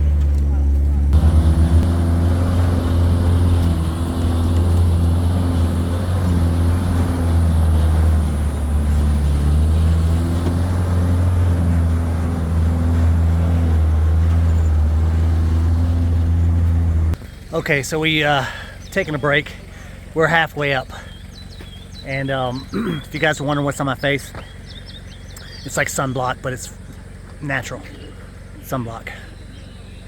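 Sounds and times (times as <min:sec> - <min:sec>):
truck engine working hard: 0:00.0 - 0:17.2, 0:20.9 - 0:23.3.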